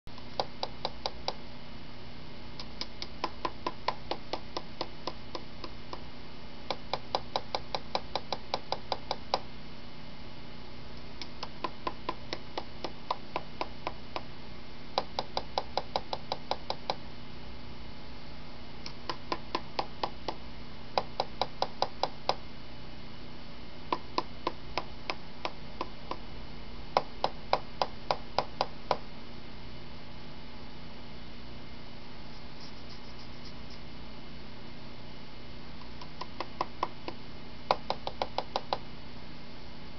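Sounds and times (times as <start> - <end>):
bird tapping its beak: 2.6 - 6.0, 6.7 - 9.4, 11.2 - 14.3, 15.0 - 17.0, 18.9 - 20.4, 21.0 - 22.4, 35.8 - 38.8.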